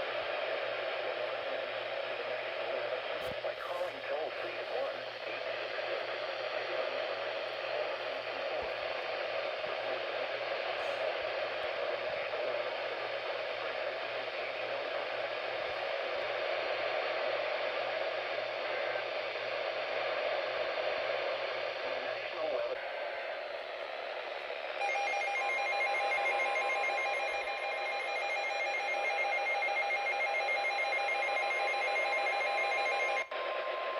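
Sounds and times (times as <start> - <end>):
radio static hiss: 0.0 - 33.9.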